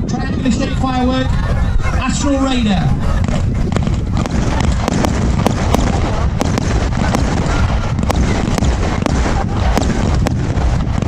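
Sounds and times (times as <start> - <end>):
wind rumble on microphone: 0.0 - 11.0
fireworks cracking: 3.0 - 11.0.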